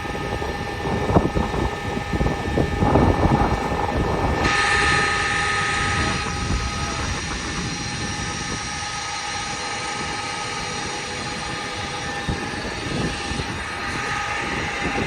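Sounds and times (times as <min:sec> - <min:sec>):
storm wind and rain: 0:00.0 - 0:15.0
thunder rumbling: 0:00.0 - 0:15.0.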